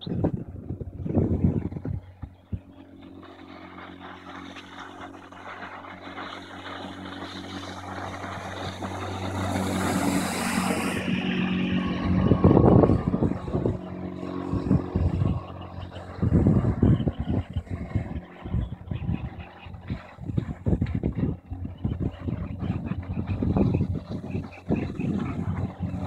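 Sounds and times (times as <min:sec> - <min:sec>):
outboard motor running: 0:00.0 - 0:26.0
heavy thumps of wind or water: 0:19.8 - 0:26.0.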